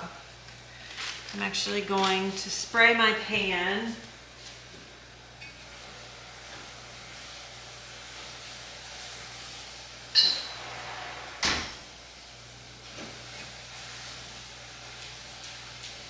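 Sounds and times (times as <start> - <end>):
metallic clink with ringing: 10.2 - 10.6.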